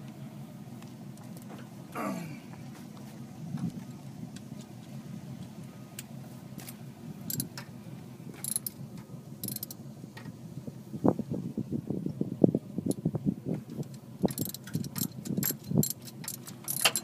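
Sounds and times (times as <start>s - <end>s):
socket ratchet clicking: 9.4s - 9.8s, 14.3s - 17.0s.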